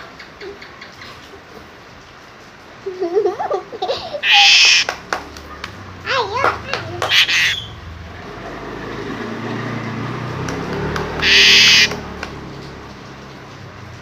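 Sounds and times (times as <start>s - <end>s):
starling harsh scream: 4.2s - 4.9s, 7.0s - 7.7s, 11.2s - 12.0s.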